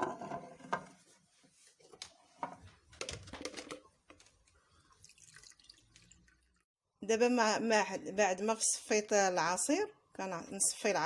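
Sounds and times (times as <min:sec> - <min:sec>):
juice being strained: 0:04.1 - 0:06.7.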